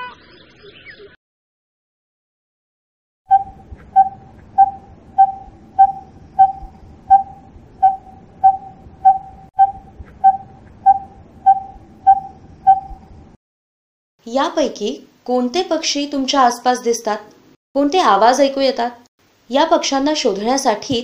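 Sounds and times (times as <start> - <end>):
bird calling single note: 3.3 - 13.1.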